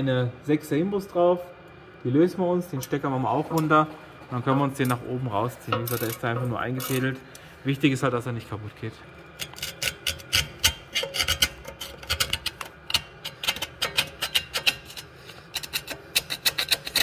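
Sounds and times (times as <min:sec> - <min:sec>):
metallic clicks and scraping of tools: 0:05.7 - 0:07.5, 0:09.3 - 0:17.0.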